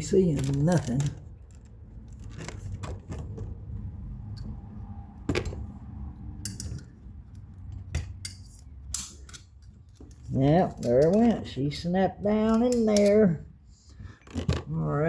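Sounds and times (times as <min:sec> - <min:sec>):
metallic clicks and scrapes: 0:06.4 - 0:11.6, 0:12.2 - 0:13.4.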